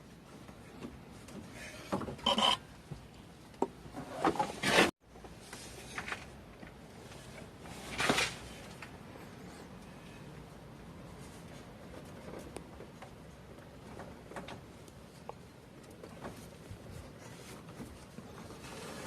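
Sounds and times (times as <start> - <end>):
rubbing and scraping: 16.2 - 19.0.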